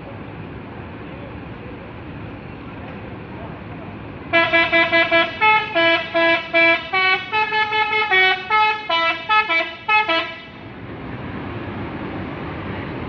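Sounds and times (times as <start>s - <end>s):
musical bus air horn: 4.3s - 10.7s.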